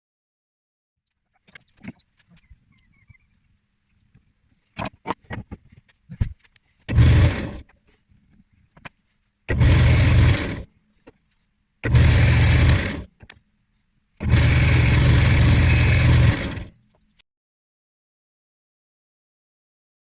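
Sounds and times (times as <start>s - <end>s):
power tool motor bursts: 6.9s - 7.7s, 9.5s - 10.7s, 11.8s - 13.1s, 14.2s - 16.8s.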